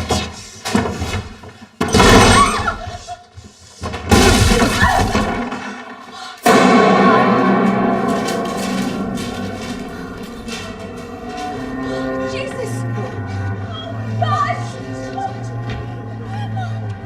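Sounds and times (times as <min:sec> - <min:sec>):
horror film score: 0:04.0 - 0:17.0
loud crashing hits: 0:06.4 - 0:11.4.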